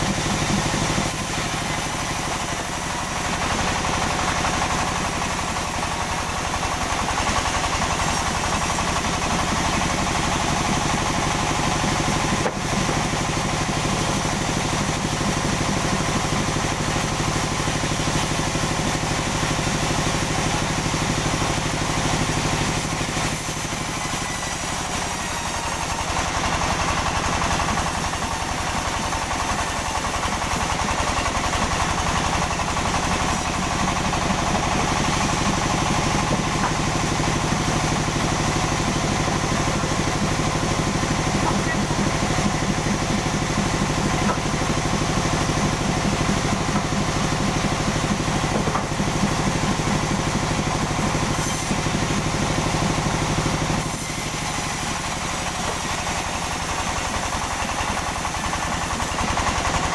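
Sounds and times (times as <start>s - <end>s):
sawmill engine running: 0.0s - 59.9s.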